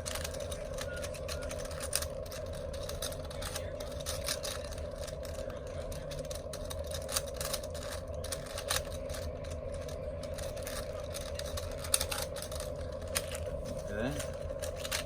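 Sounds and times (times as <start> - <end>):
steady background hum: 0.0 - 15.0
puzzle cube plastic clicks: 14.2 - 15.0.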